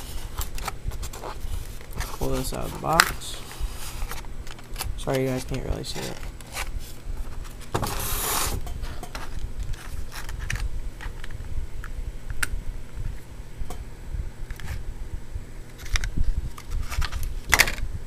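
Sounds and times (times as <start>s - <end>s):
cardboard and packing rustling: 0.0s - 11.3s, 15.8s - 17.7s.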